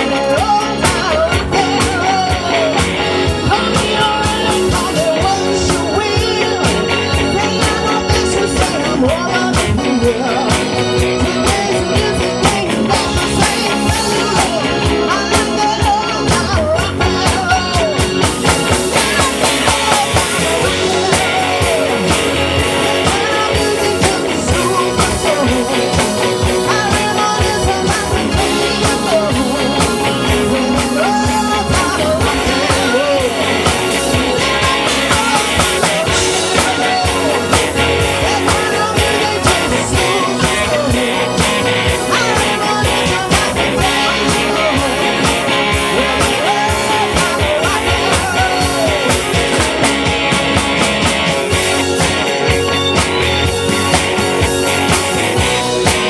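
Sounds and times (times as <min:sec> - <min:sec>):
woman singing: 0:00.0 - 0:49.5
live rock band playing: 0:00.0 - 0:56.0.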